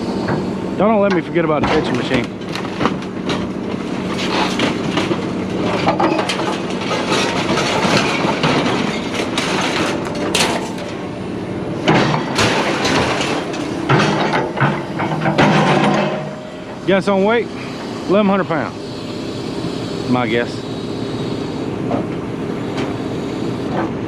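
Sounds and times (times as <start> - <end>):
scrap metal clanking: 11.9 - 16.7.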